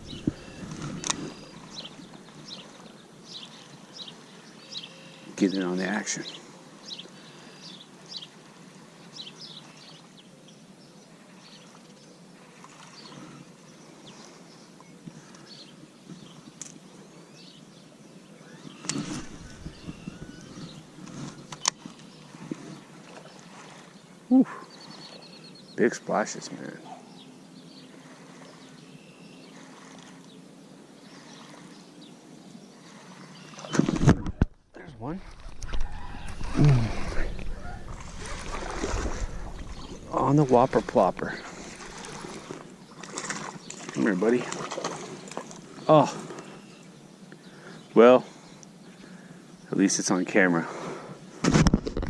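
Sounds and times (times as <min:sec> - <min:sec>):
small birds chirping: 0:00.0 - 0:33.8, 0:34.8 - 0:50.6
bird chirps: 0:18.4 - 0:20.9, 0:35.3 - 0:44.2
low steady hum: 0:33.6 - 0:43.9.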